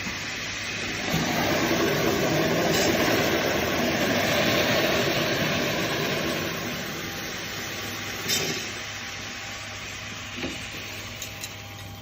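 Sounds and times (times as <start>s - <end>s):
corn rushing down metal chute: 0.8s - 7.5s.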